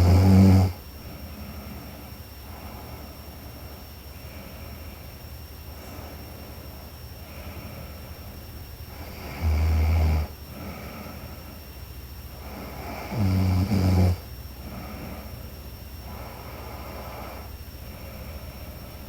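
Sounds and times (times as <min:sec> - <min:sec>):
woman snoring: 0:00.0 - 0:00.8, 0:08.9 - 0:11.2, 0:12.5 - 0:14.3
quiet breathing: 0:00.0 - 0:13.4, 0:14.1 - 0:19.0.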